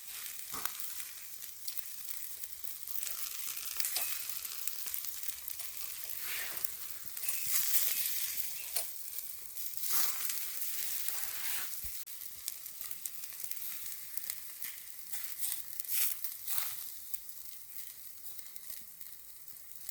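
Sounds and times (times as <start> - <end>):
charcoal pops and crackles: 0.0 - 19.9
skewers sizzling over charcoal: 0.0 - 19.9.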